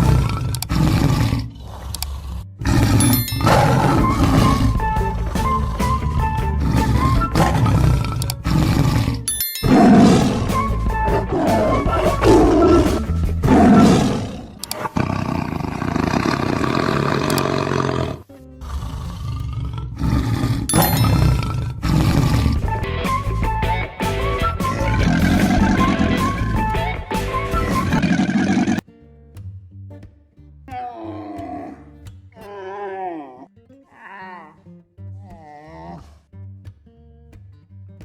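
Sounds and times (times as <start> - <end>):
deep animal roars: 0.0 - 5.0, 6.6 - 22.7, 24.7 - 26.4, 27.8 - 28.8, 30.8 - 34.6
music: 2.4 - 14.8, 18.2 - 19.4, 20.7 - 28.1, 28.8 - 32.5, 33.5 - 35.4, 36.2 - 38.0.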